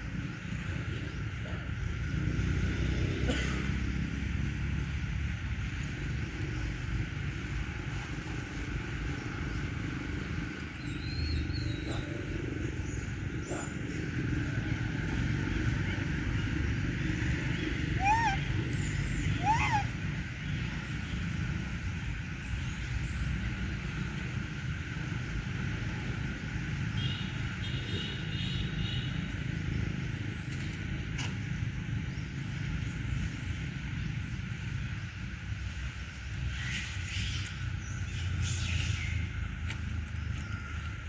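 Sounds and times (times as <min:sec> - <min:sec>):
low outdoor rumble: 0:00.0 - 0:41.0
animal calls: 0:13.2 - 0:20.8.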